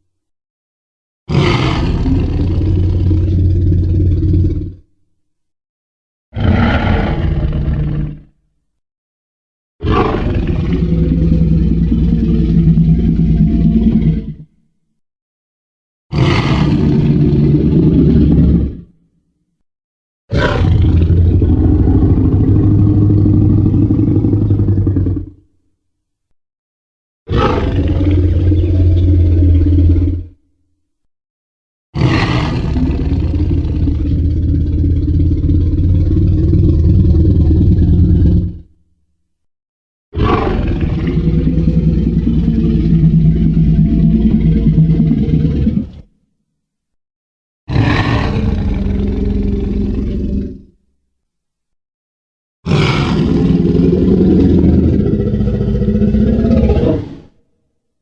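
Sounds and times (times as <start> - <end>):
deep dinosaur roar: 1.3 - 4.9, 6.4 - 8.4, 9.8 - 14.5, 16.1 - 19.0, 20.3 - 25.6, 27.3 - 30.4, 32.0 - 38.8, 40.2 - 46.1, 47.7 - 50.8, 52.7 - 57.4.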